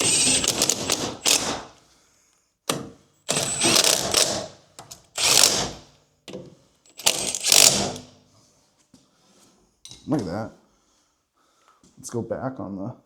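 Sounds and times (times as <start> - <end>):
mechanical ratcheting clicks: 7.0 - 8.0.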